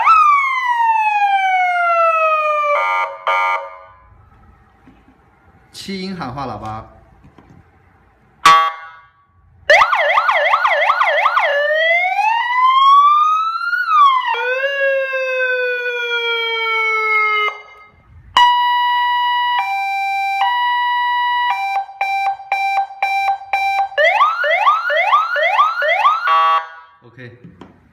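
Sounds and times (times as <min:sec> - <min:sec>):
electronic siren cycling tones: 0:07.8 - 0:26.9.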